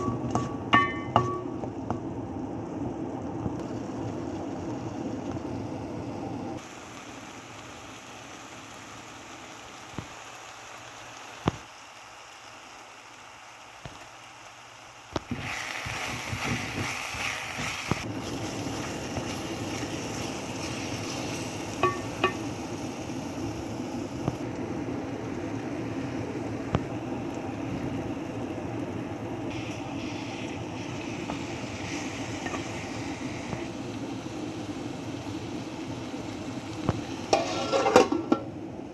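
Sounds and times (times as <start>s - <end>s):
utensils knocking: 0.0s - 1.8s
frying sizzle in pan: 0.0s - 38.9s.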